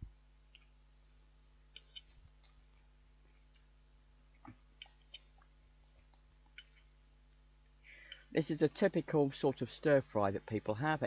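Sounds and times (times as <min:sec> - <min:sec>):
faint electrical hum: 0:00.0 - 0:11.0
soft eating clicks: 0:00.5 - 0:08.3.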